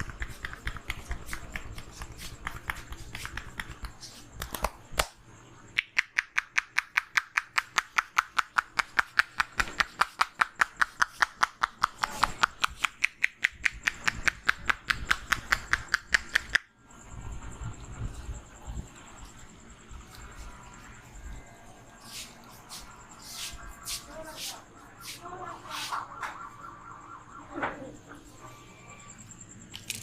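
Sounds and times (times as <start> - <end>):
hands tapping on head: 0.0 - 5.1, 5.8 - 16.6.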